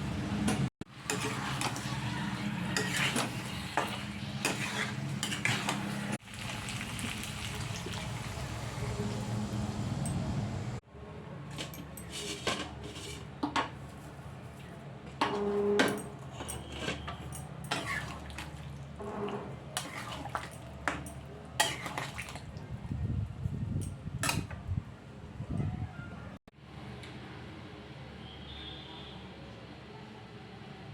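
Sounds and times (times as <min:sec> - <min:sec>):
metal utensils clinking on dishes: 0:01.0 - 0:06.0, 0:11.5 - 0:13.7, 0:15.2 - 0:18.6, 0:19.8 - 0:22.5.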